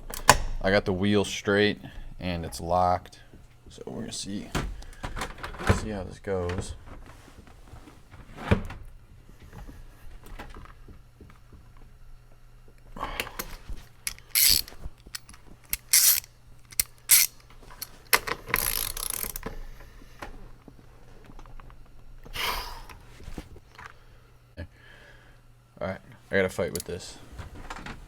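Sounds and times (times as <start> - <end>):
ratchet wrench clicking: 14.1 - 17.9, 18.5 - 19.5.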